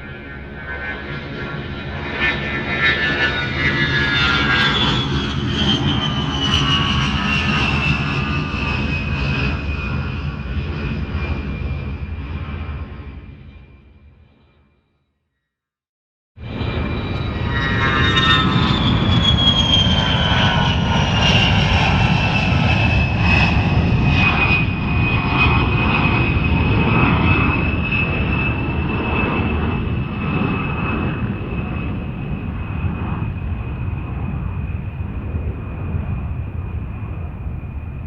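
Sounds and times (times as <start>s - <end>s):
aircraft engine rumble and whine: 0.0s - 14.6s, 16.4s - 38.0s.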